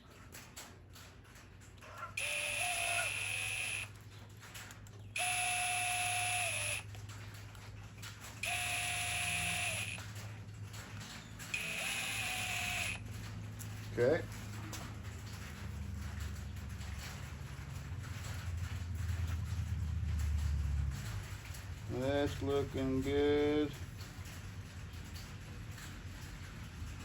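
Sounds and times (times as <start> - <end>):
electric screwdriver motor whining: 2.2 - 4.0, 5.2 - 7.0, 8.4 - 10.0, 11.5 - 13.0.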